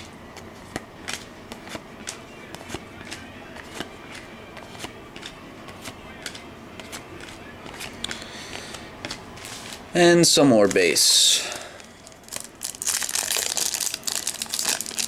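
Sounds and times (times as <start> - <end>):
trading cards clicking and snapping: 0.4 - 9.2.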